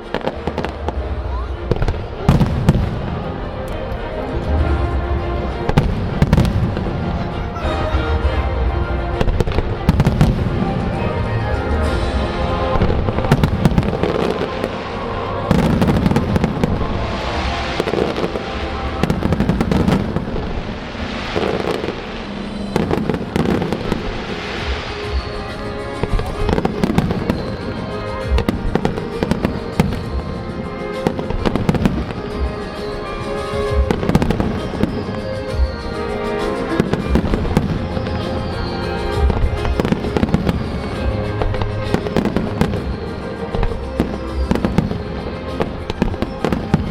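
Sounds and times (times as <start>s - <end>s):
music playing: 0.0s - 46.9s
firework shell bursts and crackles: 12.7s - 46.9s.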